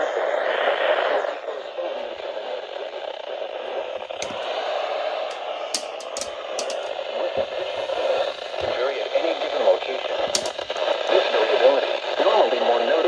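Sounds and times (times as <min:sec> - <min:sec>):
sharp crackling clicks: 0:04.0 - 0:04.6, 0:05.3 - 0:08.8, 0:10.1 - 0:11.1.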